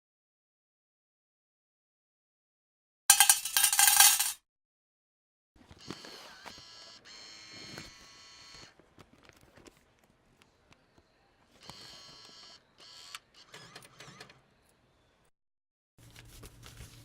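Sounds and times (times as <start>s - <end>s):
coins clinking: 3.1s - 4.4s.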